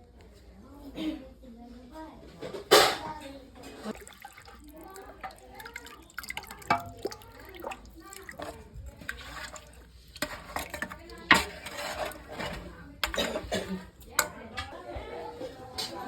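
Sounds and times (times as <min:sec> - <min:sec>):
dishes and utensils clinking: 0:02.4 - 0:16.0.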